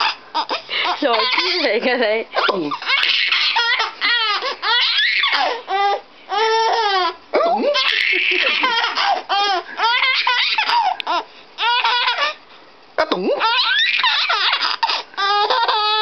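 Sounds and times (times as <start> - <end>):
baby laughing: 0.0 - 12.4, 13.0 - 16.0.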